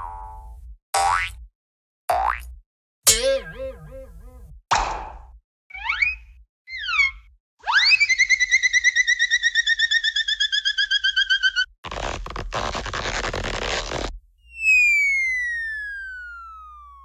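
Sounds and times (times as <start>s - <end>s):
smooth falling tone: 14.5s - 17.0s.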